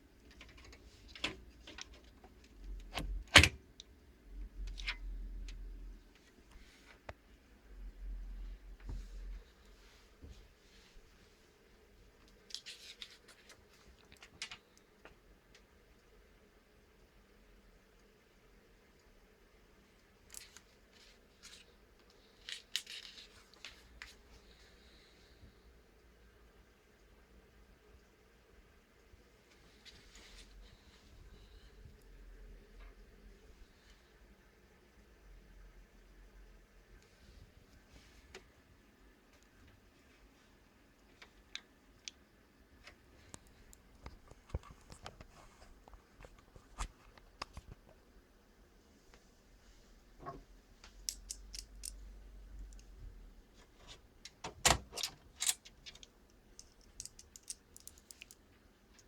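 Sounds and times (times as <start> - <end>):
small hard parts clicking and scraping: 0.2 - 3.0, 50.2 - 53.0, 53.6 - 59.0
clicks of computer parts handled: 53.9 - 58.4.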